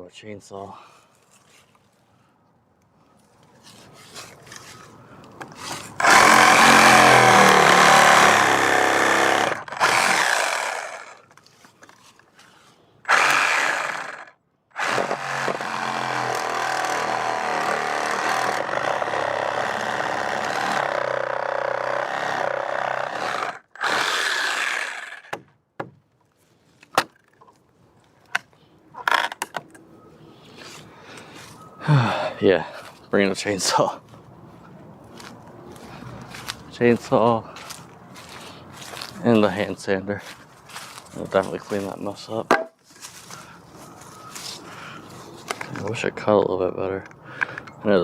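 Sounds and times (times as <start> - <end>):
power saw cutting wood: 5.6 - 11.2, 13.1 - 25.4.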